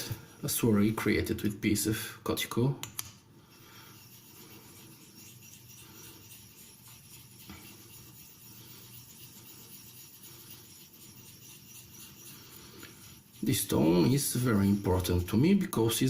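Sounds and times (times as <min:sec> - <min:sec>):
knife scraping on whetstone: 0:03.5 - 0:15.4.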